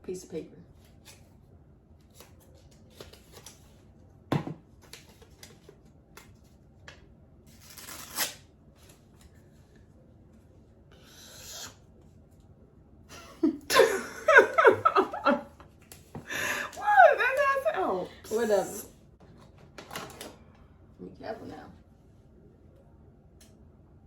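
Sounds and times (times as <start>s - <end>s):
paper rustling or tearing: 7.5s - 9.0s.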